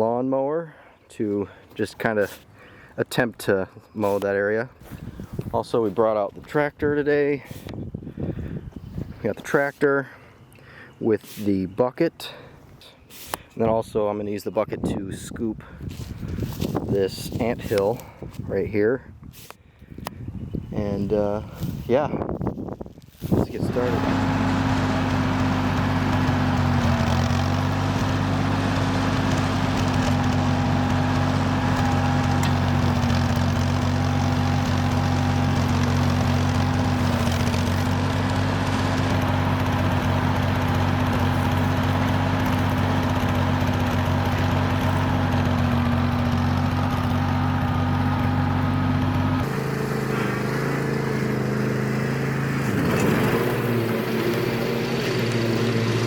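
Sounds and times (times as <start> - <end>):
engine running: 23.5 - 56.0.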